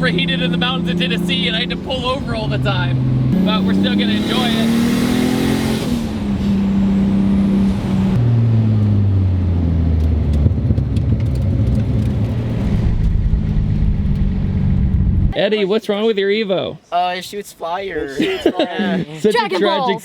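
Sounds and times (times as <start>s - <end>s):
car engine running: 0.0s - 15.3s.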